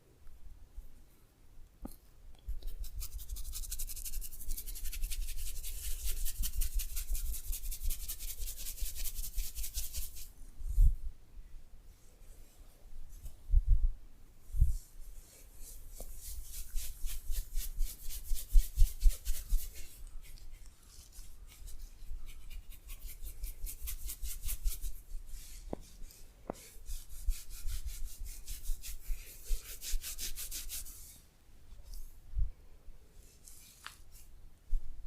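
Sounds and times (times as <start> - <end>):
hands rubbing in massage: 2.6 - 10.3, 14.6 - 32.1, 33.2 - 34.3.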